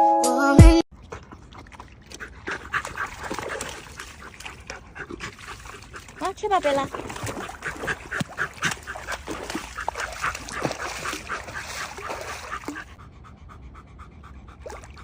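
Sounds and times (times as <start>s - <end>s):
dog eating with wet smacking: 0.9s - 13.0s.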